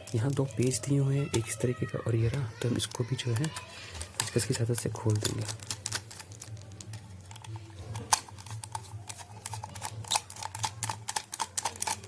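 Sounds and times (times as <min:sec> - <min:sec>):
plastic casing clicking: 0:00.0 - 0:01.6, 0:02.8 - 0:12.0.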